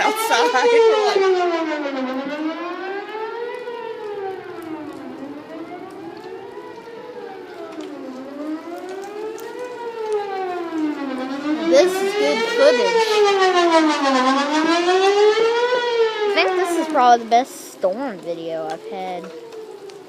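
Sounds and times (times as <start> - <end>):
tornado siren wailing: 0.0 - 20.0.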